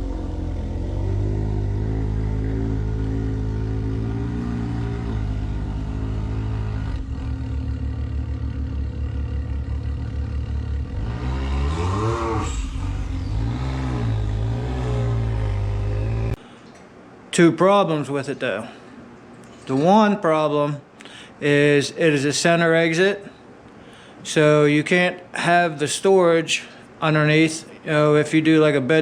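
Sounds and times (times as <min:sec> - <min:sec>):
engine idling and revving: 0:00.0 - 0:16.4.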